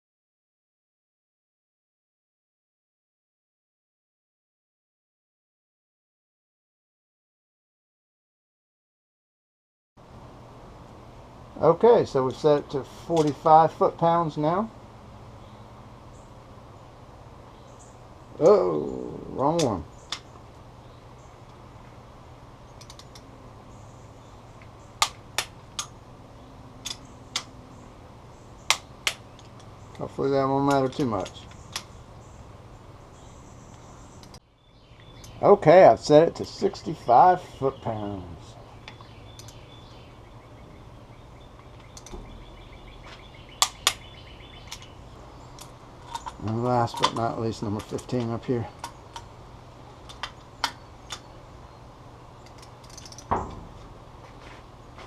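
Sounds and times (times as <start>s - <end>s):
torque wrench clicks: 52.4s - 53.3s.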